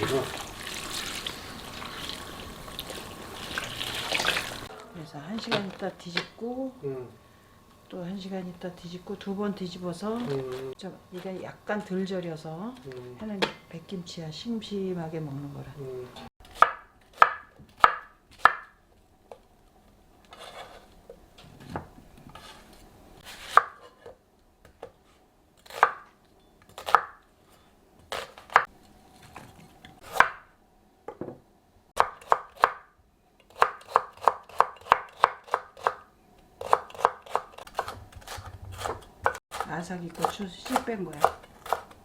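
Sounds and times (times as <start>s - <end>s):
knife chopping on cutting board: 16.6s - 18.7s, 23.3s - 24.9s, 30.0s - 30.4s, 33.5s - 36.0s, 36.6s - 42.0s.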